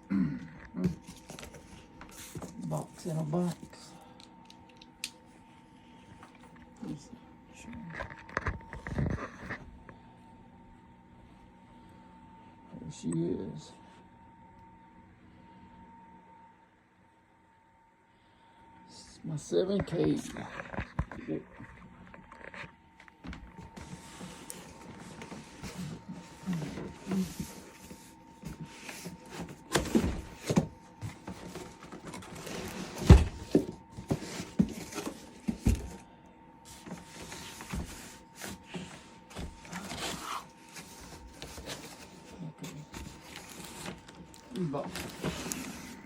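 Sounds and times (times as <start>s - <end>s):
cardboard scraping and rustling: 0.8s - 3.8s, 20.1s - 36.0s, 36.7s - 46.0s.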